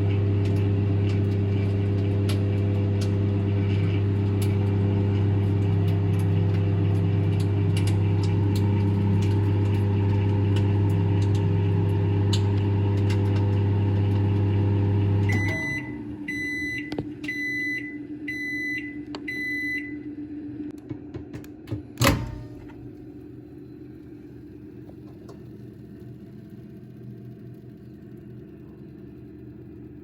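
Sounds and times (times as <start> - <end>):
microwave oven humming: 0.0 - 30.0
microwave beeps: 14.6 - 20.2, 22.0 - 22.8.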